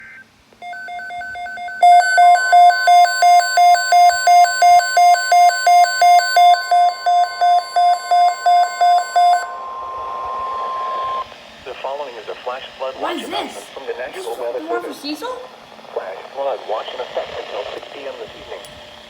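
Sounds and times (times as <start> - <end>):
steady warning alert tone: 0.6 - 11.2
weather radio alarm beeping: 0.6 - 11.3.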